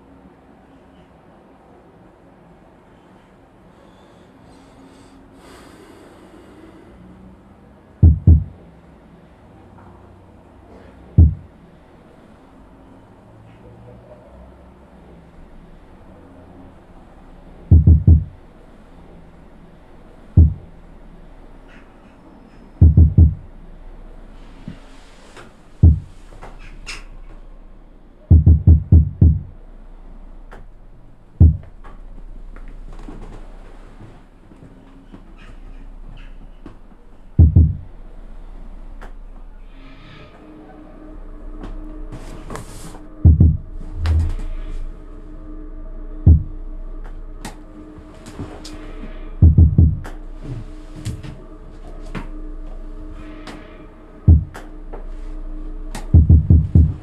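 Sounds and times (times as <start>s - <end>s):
low steady hum: 0.0s - 57.0s
deep heavy thuds: 8.0s - 8.6s, 11.2s - 11.5s, 17.7s - 18.4s, 20.4s - 20.7s, 22.8s - 23.5s, 25.8s - 26.2s, 28.3s - 29.6s, 31.4s - 31.8s, 37.4s - 37.9s, 43.2s - 44.6s, 46.3s - 46.6s, 49.4s - 50.2s, 54.3s - 54.6s, 56.1s - 57.0s
heavy dull knocks: 8.0s - 8.6s, 11.2s - 11.5s, 17.7s - 18.4s, 20.4s - 20.7s, 22.8s - 23.4s, 25.8s - 26.1s, 28.3s - 29.5s, 31.4s - 31.7s, 37.4s - 37.8s, 43.3s - 44.4s, 46.3s - 46.5s, 49.4s - 50.2s, 54.3s - 54.6s, 56.2s - 57.0s.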